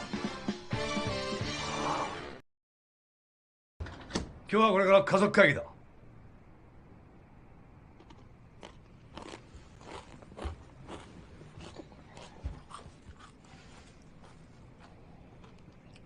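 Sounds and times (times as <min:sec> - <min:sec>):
person chewing crunchy food: 0:08.0 - 0:16.0.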